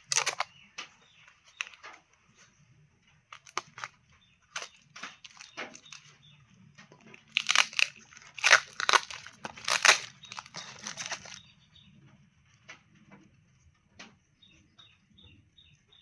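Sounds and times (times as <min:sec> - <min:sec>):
packaging wrap crumpling: 0:00.0 - 0:00.6, 0:01.4 - 0:02.0, 0:03.3 - 0:06.2, 0:07.1 - 0:11.5.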